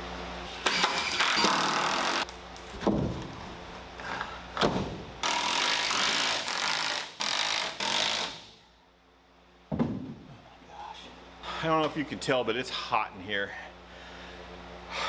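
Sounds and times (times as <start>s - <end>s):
power drill boring into wood: 5.2s - 8.4s.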